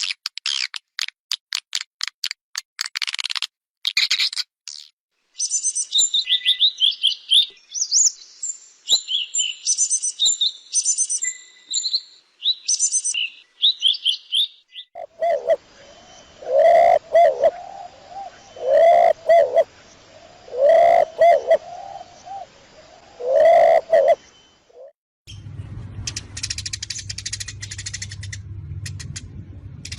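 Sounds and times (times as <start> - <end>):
songbird singing high phrases: 4.0 - 24.9
dove cooing: 15.0 - 24.2.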